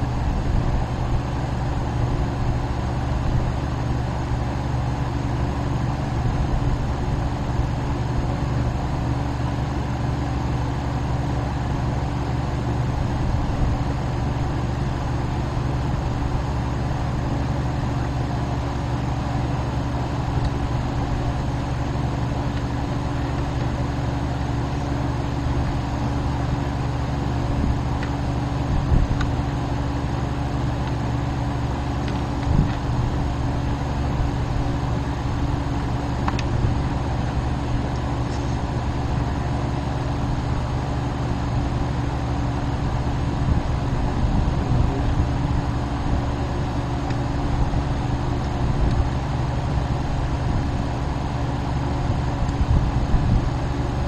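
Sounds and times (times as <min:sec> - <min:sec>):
road rumble: 0:00.0 - 0:54.0
vehicle engine: 0:11.9 - 0:51.1.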